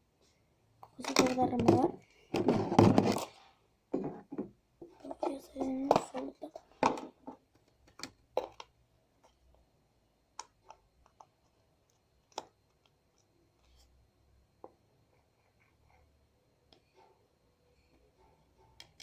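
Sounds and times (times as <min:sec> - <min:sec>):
plastic paint pots clicking: 0:00.8 - 0:03.3, 0:04.9 - 0:09.5.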